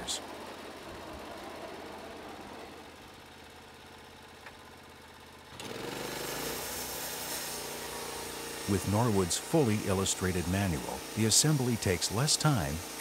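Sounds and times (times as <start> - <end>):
low mechanical hum: 0.0 - 13.0
small motor whining: 5.5 - 13.0.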